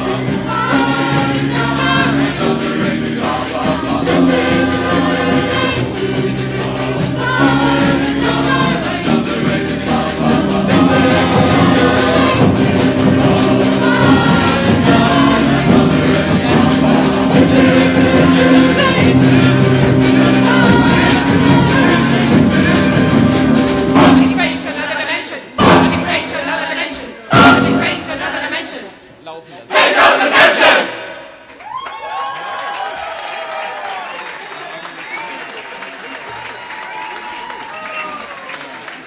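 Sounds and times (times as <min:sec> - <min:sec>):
percussion band drumming: 0:00.0 - 0:24.9, 0:25.6 - 0:26.6, 0:27.3 - 0:28.4
choir singing: 0:00.0 - 0:29.0, 0:29.7 - 0:31.4.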